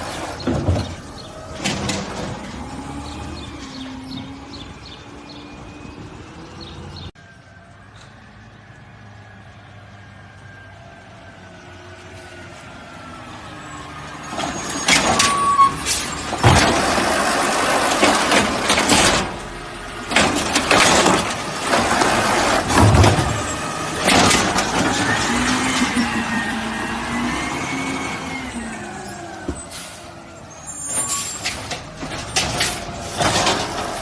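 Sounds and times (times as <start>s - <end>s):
garbage truck engine hum: 0.0s - 34.0s
hissing and clattering bursts: 30.9s - 34.0s.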